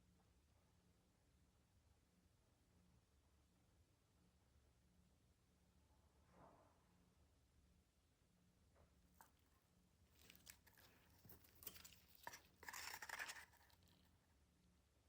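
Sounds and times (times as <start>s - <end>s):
rustling and crinkling: 9.2s - 14.2s.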